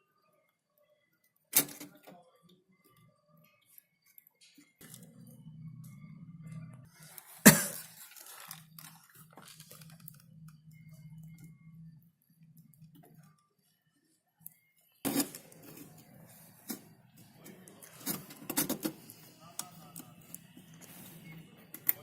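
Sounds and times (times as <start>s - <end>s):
low hum: 4.8s - 7.8s, 8.5s - 13.5s.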